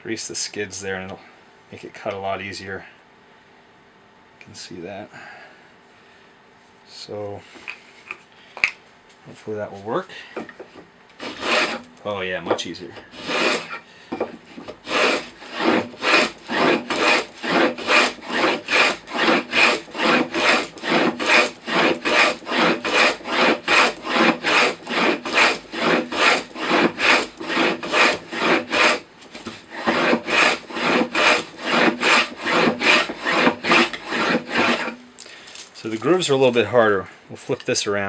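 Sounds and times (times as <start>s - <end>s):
hand plane shaving wood: 11.2s - 11.9s, 13.0s - 35.0s.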